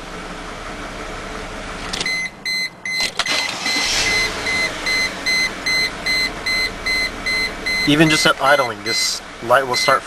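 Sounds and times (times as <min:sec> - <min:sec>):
car engine running: 0:00.0 - 0:10.0
electronic warning chime beeping: 0:02.1 - 0:08.8.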